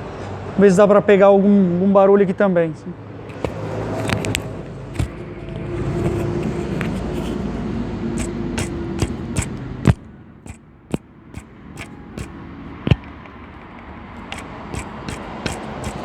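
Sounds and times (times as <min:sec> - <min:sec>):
water pump bearing clicking: 0:05.0 - 0:05.2, 0:08.2 - 0:16.0
pump hum: 0:14.2 - 0:16.0.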